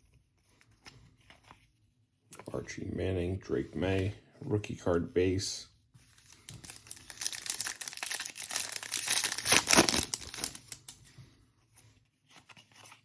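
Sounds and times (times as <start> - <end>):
foil wrapper crinkling and tearing: 6.1 - 11.0.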